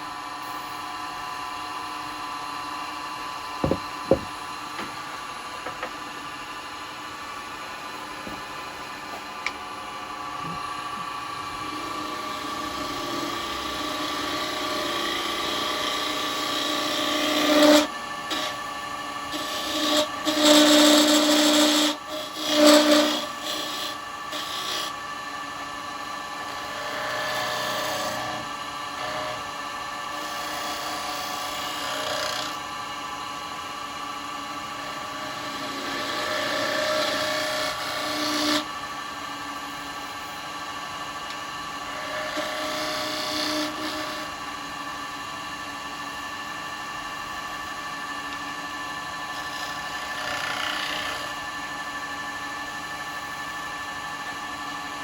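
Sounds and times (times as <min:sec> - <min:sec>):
wood lathe humming: 0:01.4 - 0:51.4
gouge rasping on wood: 0:19.4 - 0:24.9.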